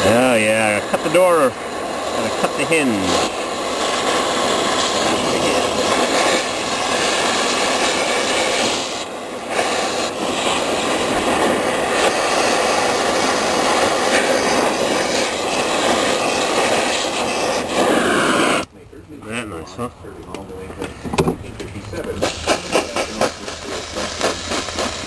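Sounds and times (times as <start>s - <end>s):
cutting torch hissing: 0.0s - 18.7s, 20.8s - 25.0s.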